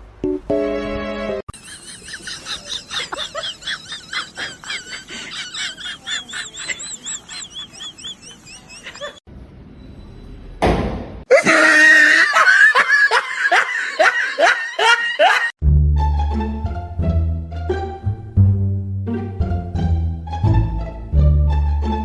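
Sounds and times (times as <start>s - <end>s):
high-pitched laughing: 1.6s - 9.2s, 11.3s - 15.5s.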